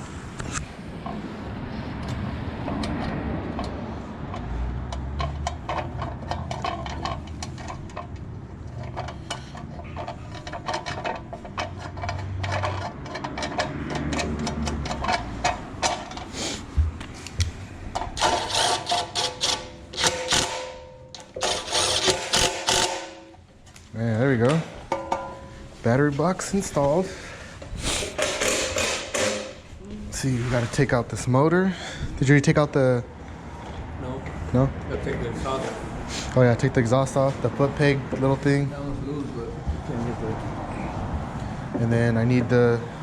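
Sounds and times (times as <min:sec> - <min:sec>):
ratchet wrench clicking: 0:18.0 - 0:23.3.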